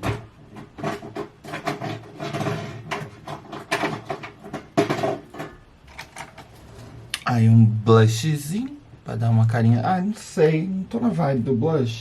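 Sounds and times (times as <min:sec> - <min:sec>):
makeup cases clicking and knocking: 0:00.0 - 0:06.5.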